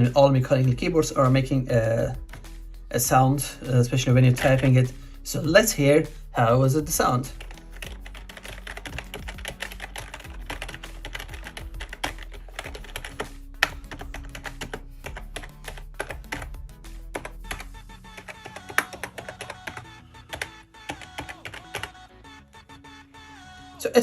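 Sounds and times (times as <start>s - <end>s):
keyboard typing: 7.3s - 22.0s.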